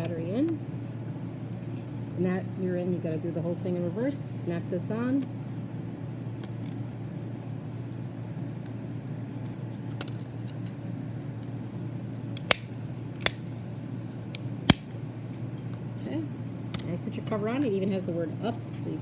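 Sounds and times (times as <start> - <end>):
steady low hum: 0.0 - 19.0
plastic tabs snapping into place: 12.4 - 13.5, 14.7 - 14.9.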